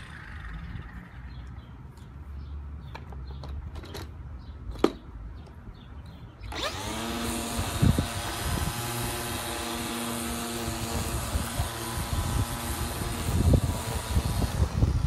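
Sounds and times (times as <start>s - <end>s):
lawn mower motor running: 0.0s - 1.4s, 6.4s - 15.0s.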